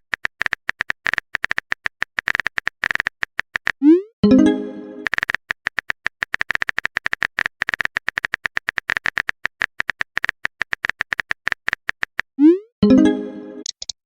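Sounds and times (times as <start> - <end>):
phone keyboard tapping clicks: 5.0 - 12.3.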